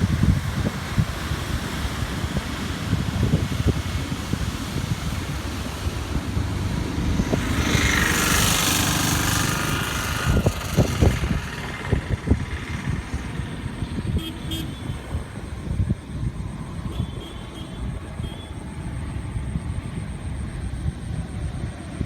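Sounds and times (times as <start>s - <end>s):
vehicle passing by: 0.0s - 16.6s
wind buffeting microphone: 0.0s - 22.0s.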